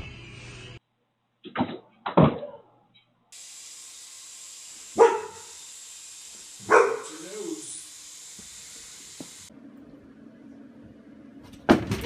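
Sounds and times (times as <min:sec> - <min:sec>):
dog barking: 0:05.0 - 0:05.5, 0:06.6 - 0:07.1.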